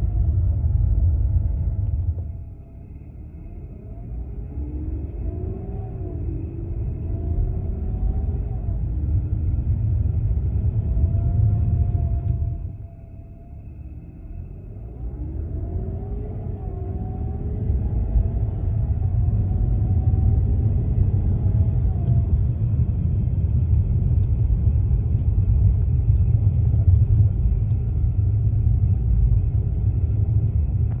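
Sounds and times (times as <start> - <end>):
car low rumble: 0.0 - 31.0.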